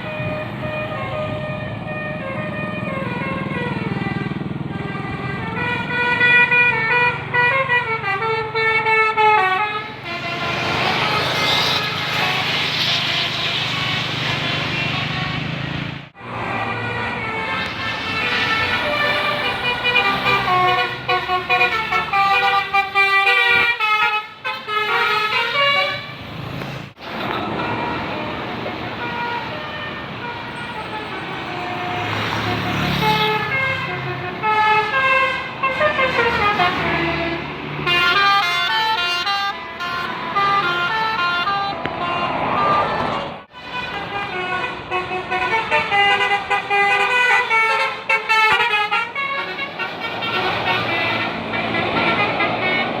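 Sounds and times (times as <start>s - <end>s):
vehicle engine noise: 0.0s - 23.0s, 25.0s - 53.0s
air horns playing melodies: 16.3s - 26.3s, 27.5s - 42.9s, 43.5s - 53.0s.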